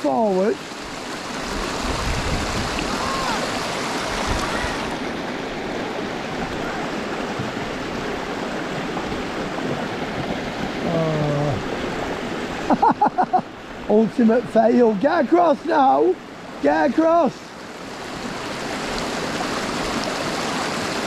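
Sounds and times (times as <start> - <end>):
voice: 0.0 - 0.6, 10.8 - 11.6, 13.9 - 17.5
river rushing over rocks: 0.0 - 21.0.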